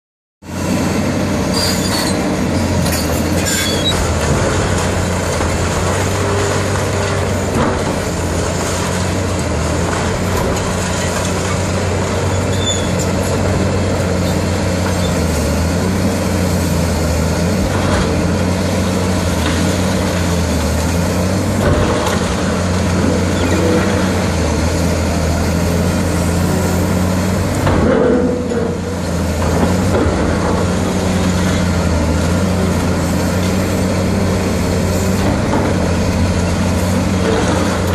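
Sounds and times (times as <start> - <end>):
heavy diesel machine running: 0.4 - 37.9
debris breaking: 3.4 - 11.9.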